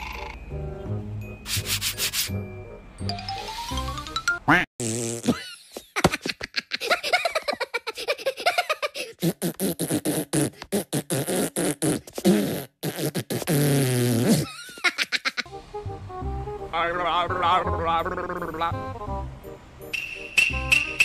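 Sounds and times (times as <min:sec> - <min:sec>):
comical vocal sound effects: 0:16.8 - 0:18.8.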